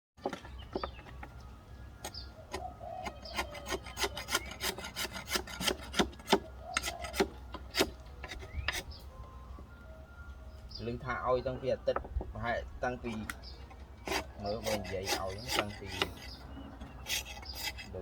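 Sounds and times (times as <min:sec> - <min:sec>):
scraping on wooden beehive: 0:00.2 - 0:01.4, 0:02.0 - 0:09.0, 0:13.1 - 0:18.0.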